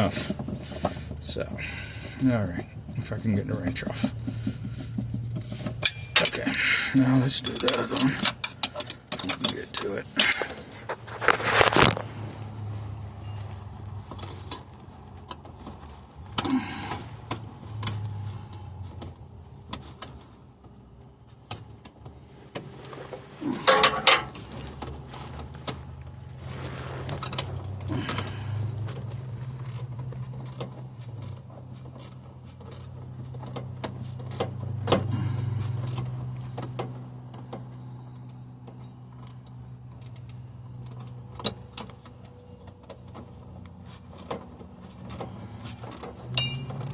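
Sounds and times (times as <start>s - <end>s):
steady low hum: 0.0s - 46.9s
wrench and metal parts clinking: 5.6s - 6.6s, 7.3s - 10.8s, 23.5s - 24.8s, 45.0s - 46.9s.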